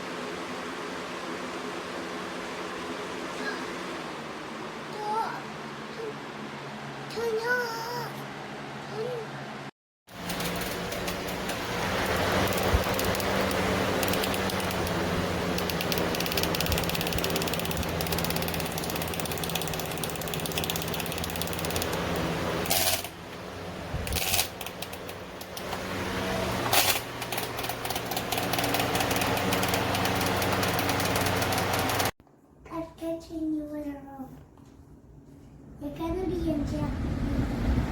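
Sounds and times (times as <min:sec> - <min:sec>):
box fan whirring: 0:00.0 - 0:32.2, 0:34.4 - 0:37.9
fan fine clattering: 0:10.1 - 0:32.1.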